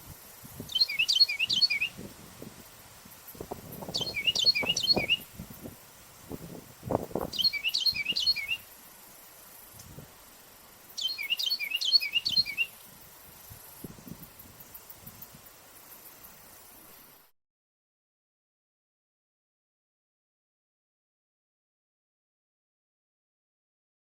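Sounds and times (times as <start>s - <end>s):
wren singing whistled notes: 0.4s - 2.1s, 3.4s - 5.7s, 7.2s - 8.8s, 10.9s - 16.8s.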